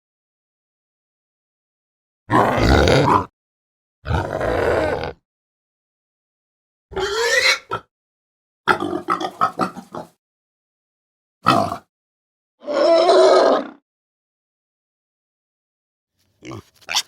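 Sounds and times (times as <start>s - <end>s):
animal grunts: 2.3s - 3.3s, 4.1s - 5.2s.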